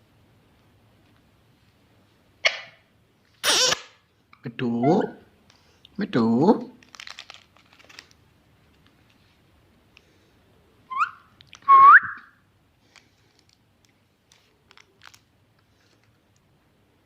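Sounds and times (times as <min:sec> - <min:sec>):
rising whistles: 0:10.9 - 0:12.4.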